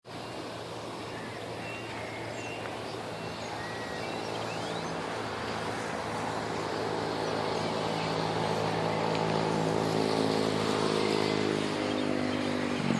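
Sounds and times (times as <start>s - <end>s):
traffic rumble: 0.0s - 12.9s
bird chirps: 1.0s - 5.0s.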